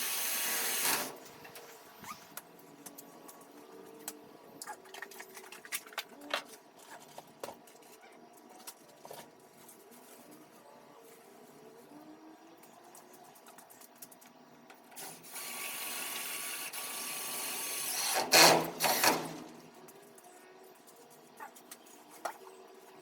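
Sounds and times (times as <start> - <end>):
power drill driving screw: 0.0 - 1.2, 15.0 - 19.4.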